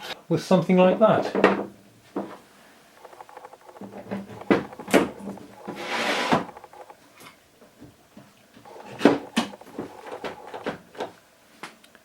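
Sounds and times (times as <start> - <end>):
clamp scraping slide: 5.6 - 6.5.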